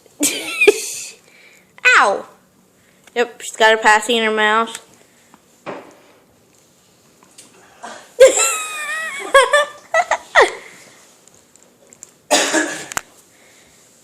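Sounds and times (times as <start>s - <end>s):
person laughing: 0.2s - 1.2s, 8.2s - 10.8s
breathy cough: 12.3s - 13.0s.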